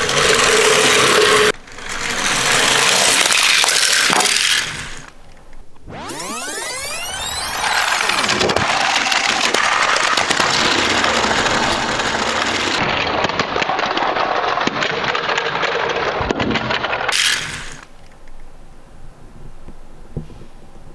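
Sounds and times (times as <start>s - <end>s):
toy cars rattling down a slope: 0.0s - 18.5s.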